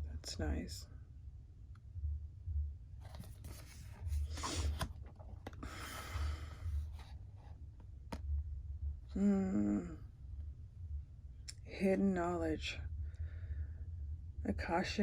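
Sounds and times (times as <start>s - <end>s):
low rumble: 0.0s - 15.0s
cards rubbing and sliding: 3.0s - 7.2s.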